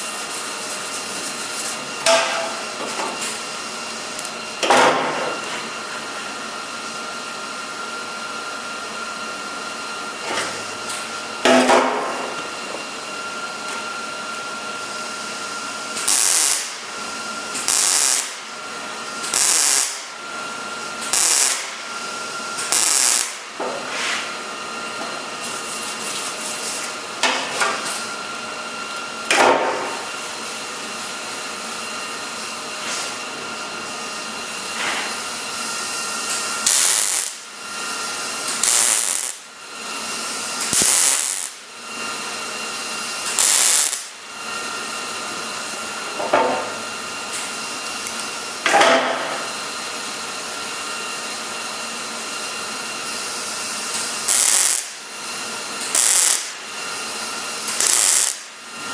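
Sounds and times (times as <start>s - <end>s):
crackling tack welds: 15.9s - 18.5s, 19.2s - 20.2s, 21.0s - 21.9s, 22.6s - 23.6s, 36.1s - 41.8s, 43.1s - 44.3s, 53.2s - 58.9s.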